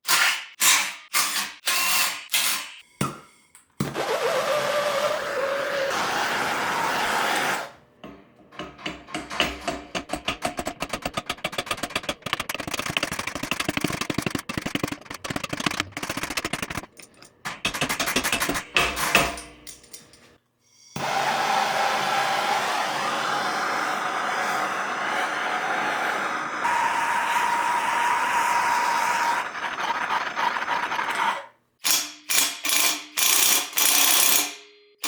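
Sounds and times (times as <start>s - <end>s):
power tool whirring: 3.9s - 7.8s, 21.0s - 29.5s.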